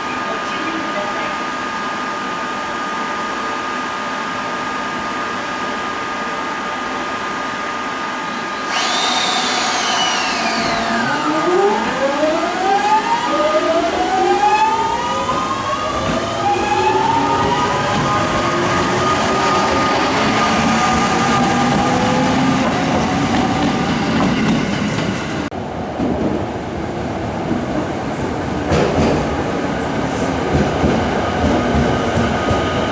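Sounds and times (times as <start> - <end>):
air compressor whining: 8.6 - 25.5.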